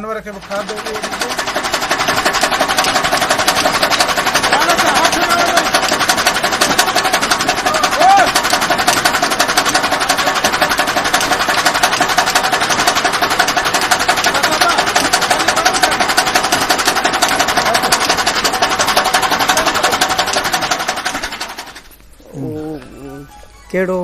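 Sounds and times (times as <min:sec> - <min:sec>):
machine running with fast clatter: 0:00.0 - 0:22.0.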